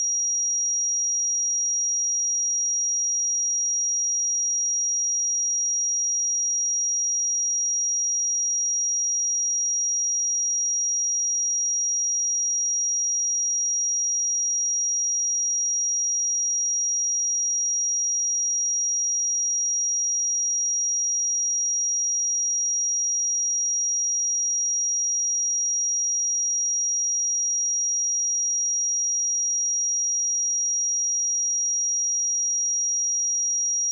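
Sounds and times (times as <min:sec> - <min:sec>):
high-pitched sine test tone: 0:00.0 - 0:03.4, 0:11.2 - 0:33.9.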